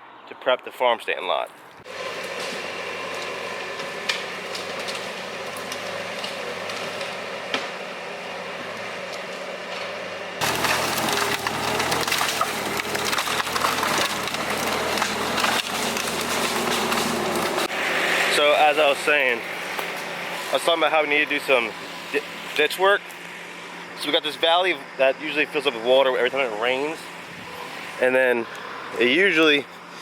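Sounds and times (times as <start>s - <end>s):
branches crackling and snapping: 1.5s - 20.8s, 21.4s - 24.0s
skid steer engine running: 1.8s - 30.0s.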